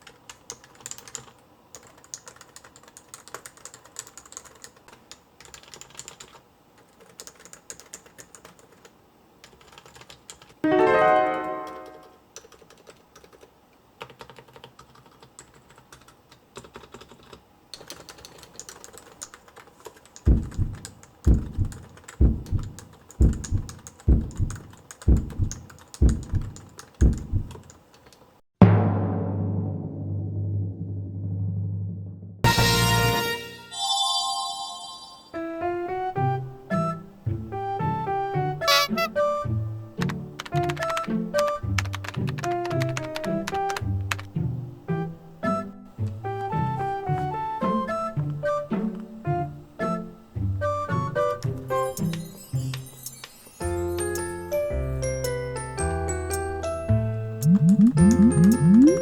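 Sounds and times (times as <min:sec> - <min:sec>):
keyboard typing: 0:00.0 - 0:10.6, 0:11.6 - 0:28.3, 0:40.4 - 0:44.3, 0:57.4 - 0:59.0
short musical chord: 0:10.7 - 0:12.2
deep drum beats: 0:20.3 - 0:27.6, 0:28.6 - 0:31.9.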